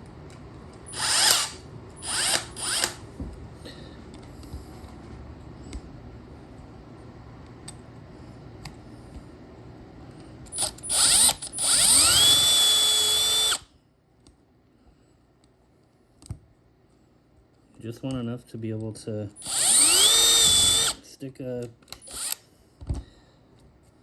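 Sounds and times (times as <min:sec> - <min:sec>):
electric drill whining: 0:00.9 - 0:03.0, 0:10.6 - 0:13.7, 0:19.4 - 0:21.0, 0:22.0 - 0:22.4.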